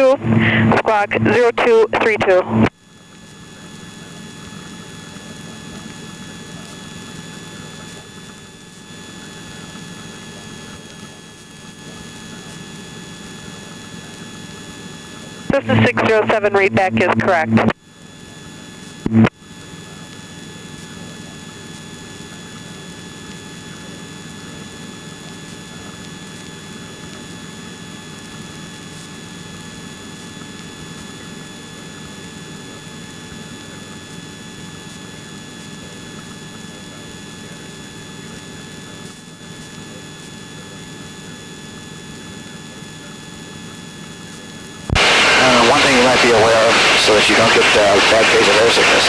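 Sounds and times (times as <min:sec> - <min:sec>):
faint whine tones: 0:00.0 - 0:12.6, 0:13.7 - 0:17.7, 0:44.8 - 0:49.0
helicopter engine and rotor drone: 0:45.0 - 0:49.0.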